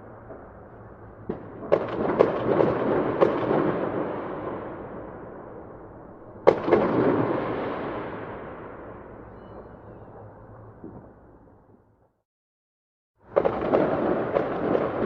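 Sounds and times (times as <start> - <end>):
fireworks bangs echoing: 0.1 - 5.6, 6.4 - 11.2, 13.3 - 15.0.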